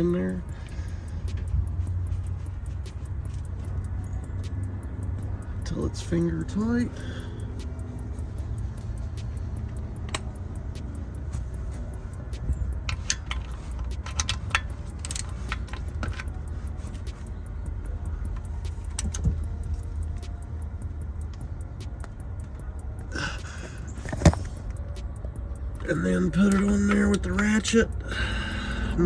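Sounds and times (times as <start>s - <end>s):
metal hand tools clinking: 9.0s - 17.5s.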